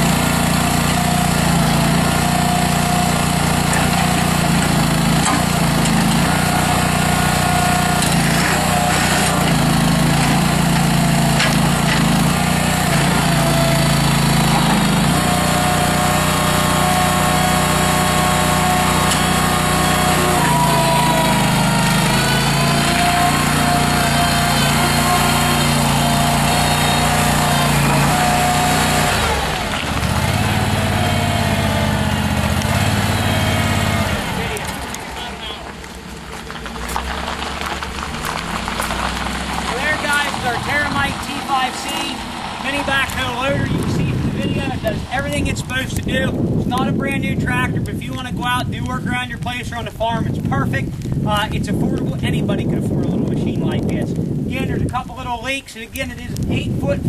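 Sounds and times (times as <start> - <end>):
hydraulic whine: 0.0 - 36.0
engine running: 0.0 - 50.1.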